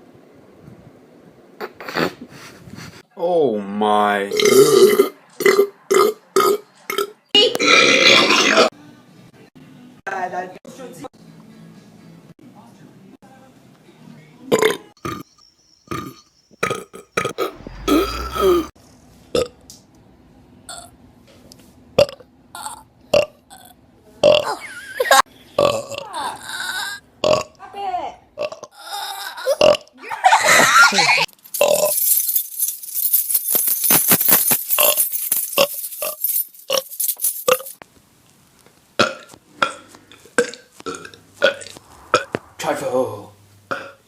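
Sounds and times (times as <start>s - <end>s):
person burping: 4.3s - 8.7s, 14.5s - 15.2s, 15.9s - 18.7s, 22.0s - 24.5s, 25.6s - 27.6s, 28.4s - 30.0s, 43.7s - 44.0s.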